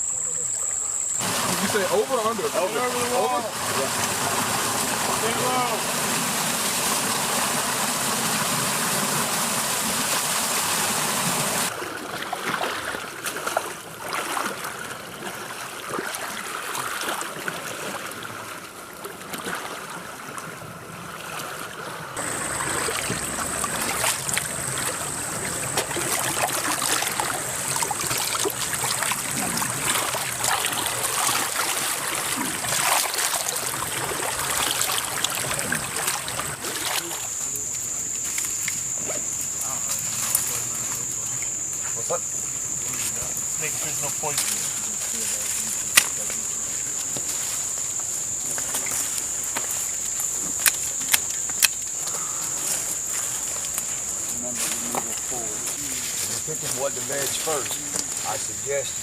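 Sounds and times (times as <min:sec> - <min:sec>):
water sloshing and trickling: 0:01.2 - 0:59.0
small splashes and knocks: 0:11.7 - 0:42.2, 0:42.9 - 0:58.5.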